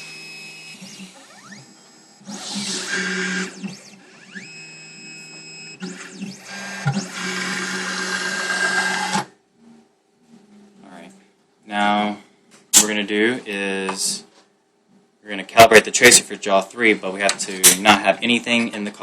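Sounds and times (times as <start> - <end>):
motor whine rising in pitch: 0.0 - 9.3.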